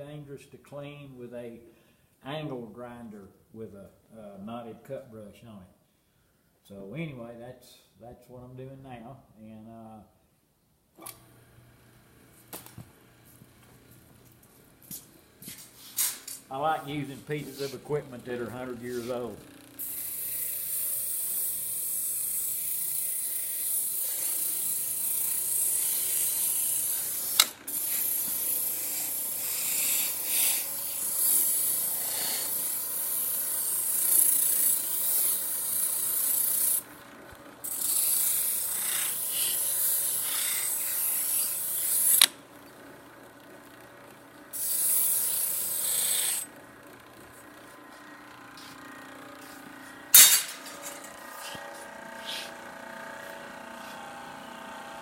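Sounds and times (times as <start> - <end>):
wire brush scratching metal: 15.7 - 36.9, 37.6 - 42.3, 44.5 - 46.5, 49.4 - 52.6.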